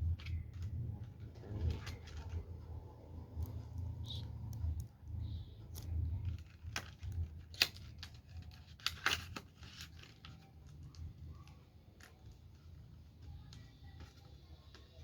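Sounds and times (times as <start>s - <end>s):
packaging scraping rustle: 0.1s - 2.8s, 5.8s - 10.9s
packaging clicks: 5.6s - 15.0s.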